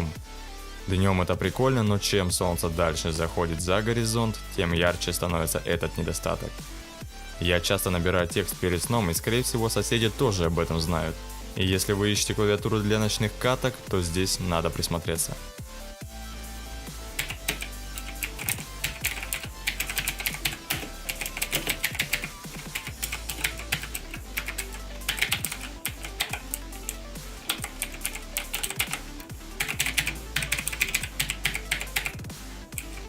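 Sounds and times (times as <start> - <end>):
mechanical keyboard typing clicks: 17.2 - 29.0.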